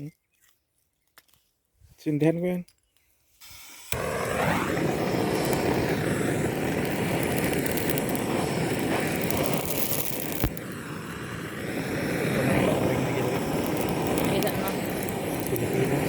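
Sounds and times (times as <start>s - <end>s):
gas torch roaring: 3.4s - 16.0s.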